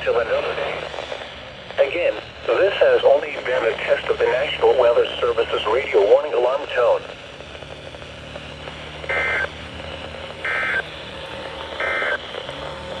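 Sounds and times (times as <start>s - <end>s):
radio reception hiss: 0.0s - 13.0s
electronic two-tone bursts: 9.1s - 9.6s, 10.4s - 10.9s, 11.8s - 12.2s.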